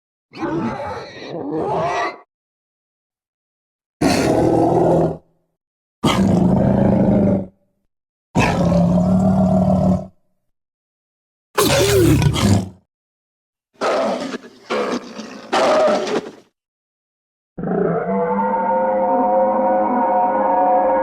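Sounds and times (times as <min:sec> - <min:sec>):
monster roars: 0:00.3 - 0:02.2, 0:11.6 - 0:12.8, 0:13.8 - 0:16.4, 0:17.6 - 0:21.0.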